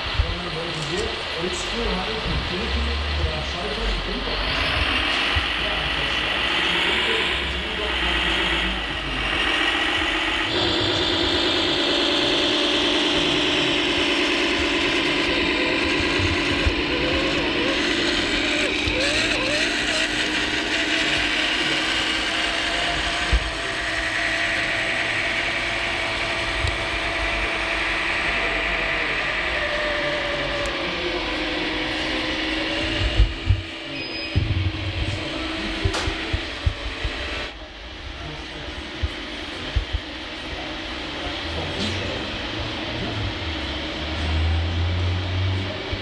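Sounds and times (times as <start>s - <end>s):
hydraulic model motors whining: 0.0s - 37.6s, 38.3s - 46.0s.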